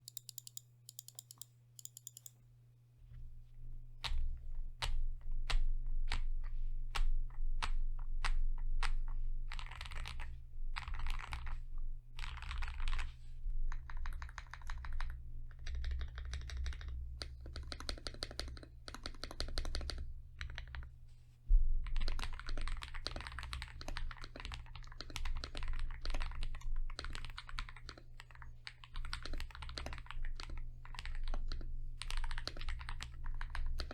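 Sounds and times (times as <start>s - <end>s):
typing on mechanical keyboard: 0.0s - 2.3s, 6.9s - 11.6s, 12.2s - 13.1s, 13.7s - 20.9s, 21.8s - 33.9s.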